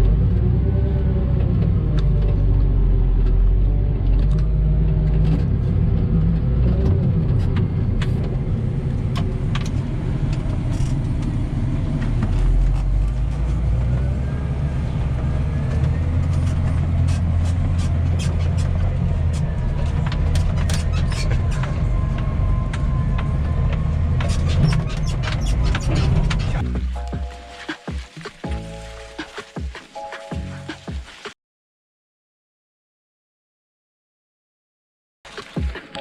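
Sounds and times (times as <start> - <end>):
heavy machine engine rumbling: 0.0 - 27.4.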